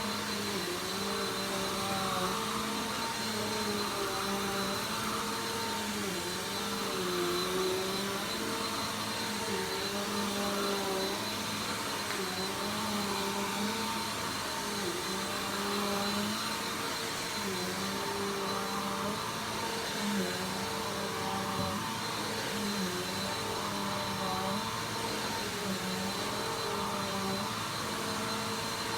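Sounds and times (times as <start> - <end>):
vacuum cleaner running: 0.0 - 28.9.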